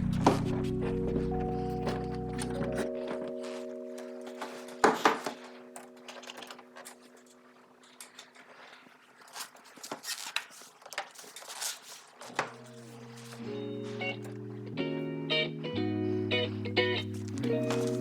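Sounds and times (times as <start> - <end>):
sustained background music: 0.0 - 7.6, 12.8 - 18.0.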